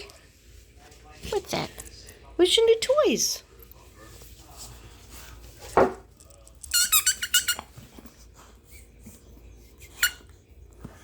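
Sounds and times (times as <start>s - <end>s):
squeaky dog toy squeaks: 6.7s - 7.7s, 10.0s - 10.3s.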